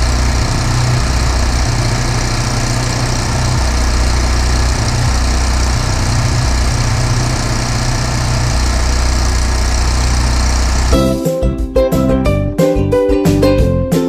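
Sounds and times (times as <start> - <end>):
engine running: 0.0 - 11.2.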